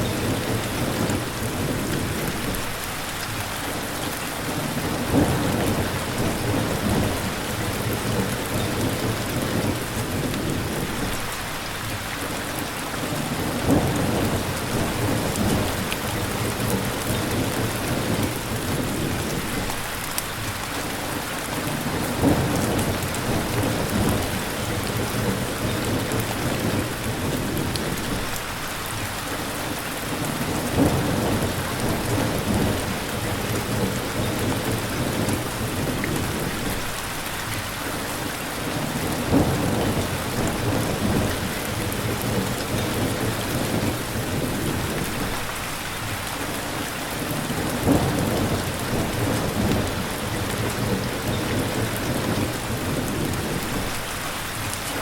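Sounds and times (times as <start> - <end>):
heavy rain falling: 0.0 - 55.0
thunder rumbling: 4.8 - 11.3, 13.3 - 19.8, 21.8 - 28.4, 30.2 - 37.1, 38.7 - 45.6, 47.2 - 54.6.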